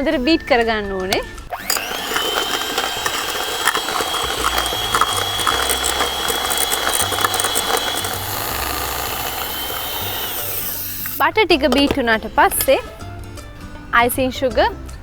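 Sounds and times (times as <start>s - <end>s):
electric mixer whining: 1.5s - 11.2s
mixer rattling clatter: 1.5s - 12.0s.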